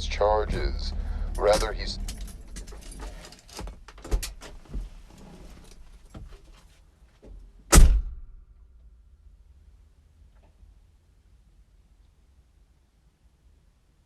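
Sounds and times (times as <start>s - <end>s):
loud thump: 7.7s - 8.4s.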